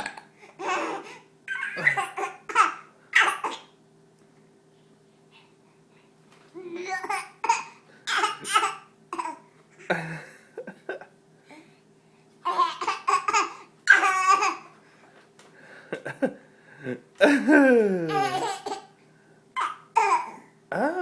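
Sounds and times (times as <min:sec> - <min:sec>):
baby laughing: 0:00.0 - 0:03.7, 0:06.8 - 0:09.4, 0:12.4 - 0:14.7, 0:17.2 - 0:19.0, 0:19.6 - 0:20.4
man burping: 0:16.9 - 0:18.2.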